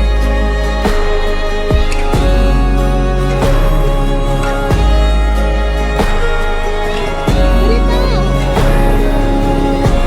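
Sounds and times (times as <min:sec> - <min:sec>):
music with held chords and beat: 0:00.0 - 0:10.0.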